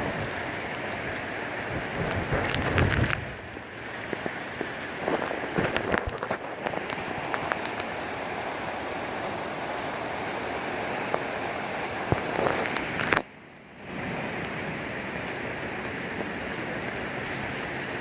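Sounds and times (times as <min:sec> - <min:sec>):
close raindrops spattering: 0:00.0 - 0:18.0
heavy rain pouring: 0:00.0 - 0:18.0.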